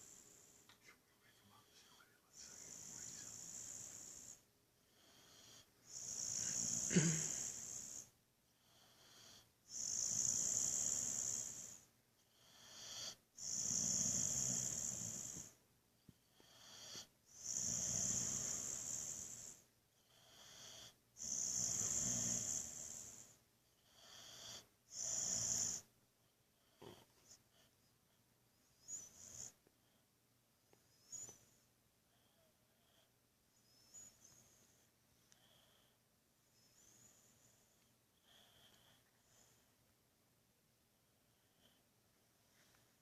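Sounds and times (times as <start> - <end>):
dog snoring: 0.0 - 15.6, 16.3 - 25.9, 26.6 - 27.8, 28.7 - 30.0, 30.9 - 35.9, 36.6 - 39.7.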